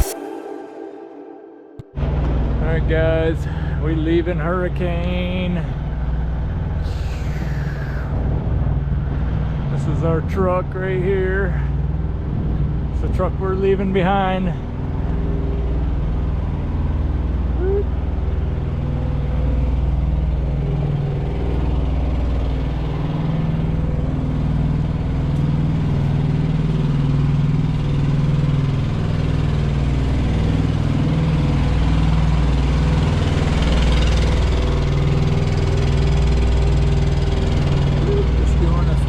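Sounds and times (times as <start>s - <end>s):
swell of noise: 0.0s - 2.9s.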